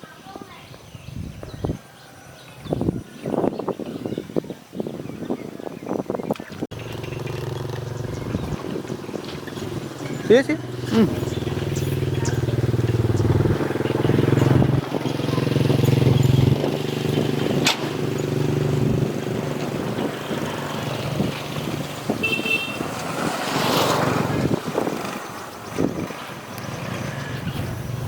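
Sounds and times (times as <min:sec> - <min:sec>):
small engine running: 0:06.7 - 0:28.0.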